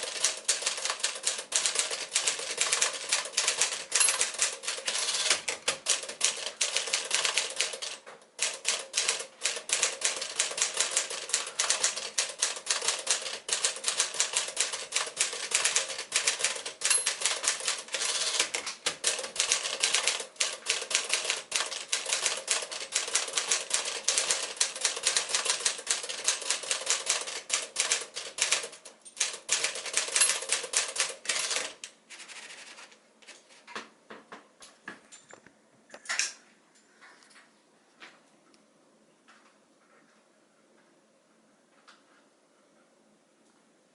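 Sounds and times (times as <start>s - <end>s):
manual typewriter keys clacking: 0.0s - 32.6s.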